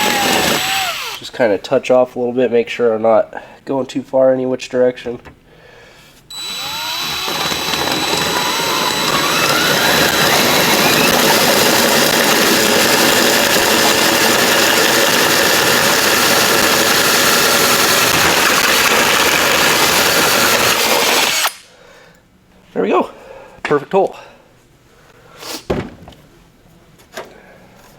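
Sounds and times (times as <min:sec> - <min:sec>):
drill cutting metal tubing: 0:00.0 - 0:01.2, 0:06.3 - 0:21.6.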